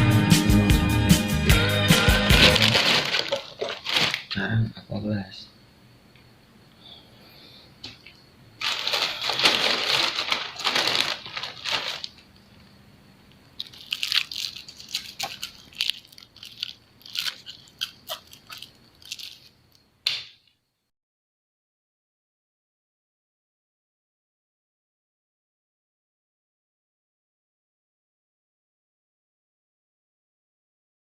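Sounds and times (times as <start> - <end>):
rustling crinkling noise: 2.2 - 4.4, 7.9 - 12.7, 13.3 - 19.8.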